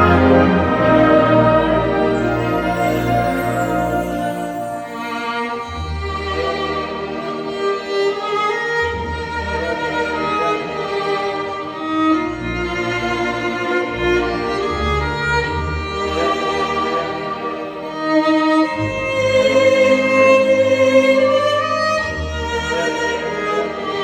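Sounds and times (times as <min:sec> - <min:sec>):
bowed strings sustained notes: 0:00.0 - 0:18.1.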